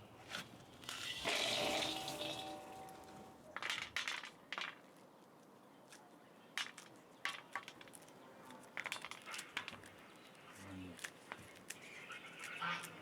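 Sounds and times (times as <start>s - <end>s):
clicks and knocks of handling: 5.9s - 10.0s.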